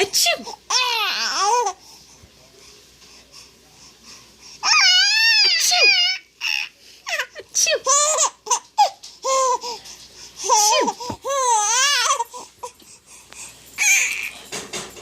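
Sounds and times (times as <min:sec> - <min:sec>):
baby laughing: 0:05.8 - 0:09.8.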